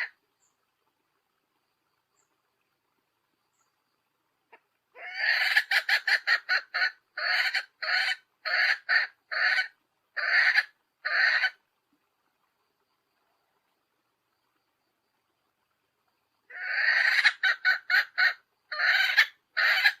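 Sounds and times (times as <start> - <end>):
hen cackling: 4.5 - 11.6, 16.5 - 20.0.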